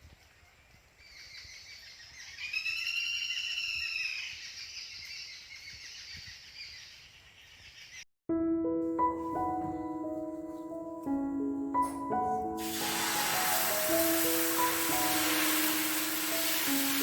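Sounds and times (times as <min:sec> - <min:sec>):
long drawn-out bird call: 0:01.5 - 0:06.2.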